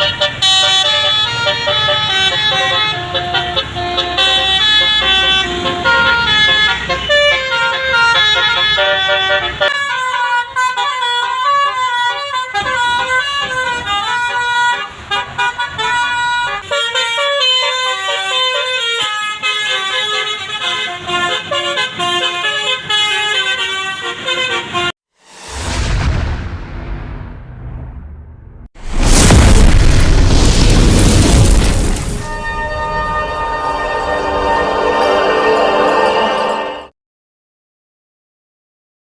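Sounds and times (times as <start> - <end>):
musical air horn playing a tune: 0.0 - 15.1, 32.3 - 36.9
low rumble: 25.3 - 34.5.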